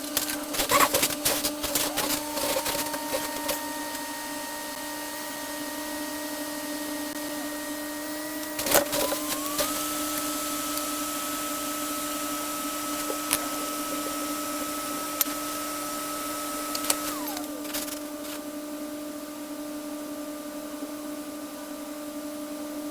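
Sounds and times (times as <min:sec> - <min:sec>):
hot-air station blowing: 0:00.0 - 0:18.5.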